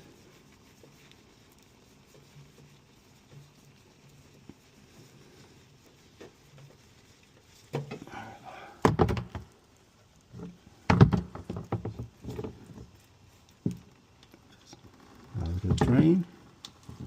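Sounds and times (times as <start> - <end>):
hand tools knocking and clunking: 8.8 - 9.5.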